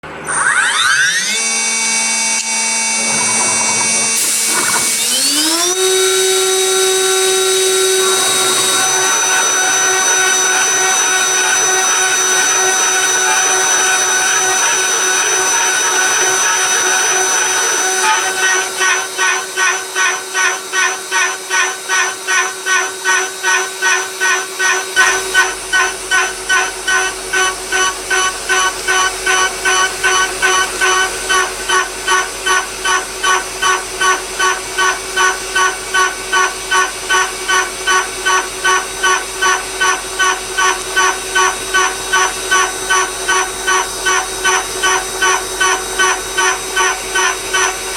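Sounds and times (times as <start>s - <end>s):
milling machine spindle whine: 0.0s - 47.9s
end mill cutting pulses: 2.5s - 13.6s.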